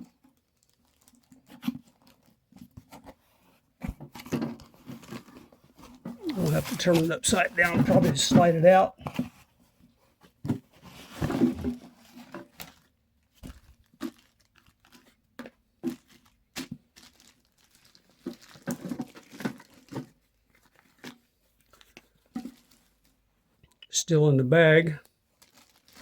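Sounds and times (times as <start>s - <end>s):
cardboard and plastic bag rustling: 4.7s - 9.2s, 15.9s - 23.2s, 25.4s - 26.0s.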